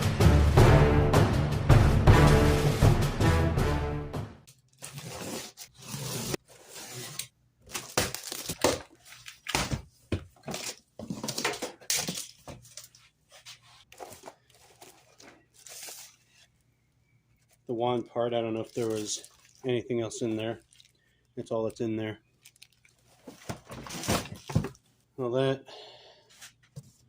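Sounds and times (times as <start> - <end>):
packaging rustling and tearing: 4.6 - 9.5, 13.9 - 16.5, 18.6 - 19.6, 22.4 - 24.8.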